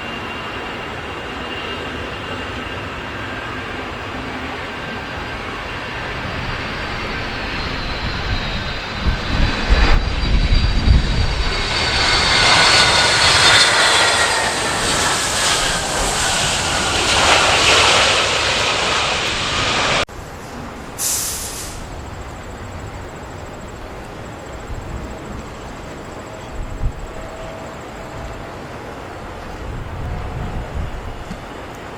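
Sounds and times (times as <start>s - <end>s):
jet airliner passing: 0.0s - 31.9s
wind buffeting microphone: 5.6s - 20.1s, 23.8s - 27.4s, 29.2s - 31.9s
brief hiss: 20.4s - 22.0s.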